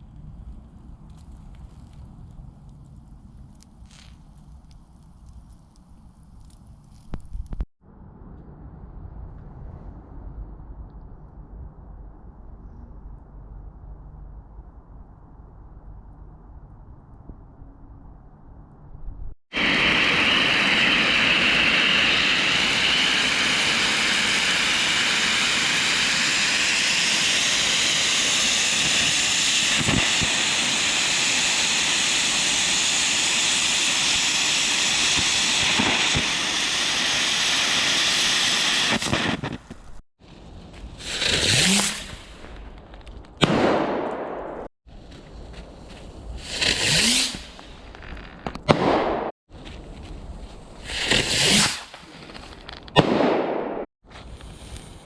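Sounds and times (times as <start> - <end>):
wood fire crackling and hissing: 0.0 - 7.7, 19.6 - 43.4, 44.9 - 48.5, 50.4 - 53.0, 54.1 - 55.0.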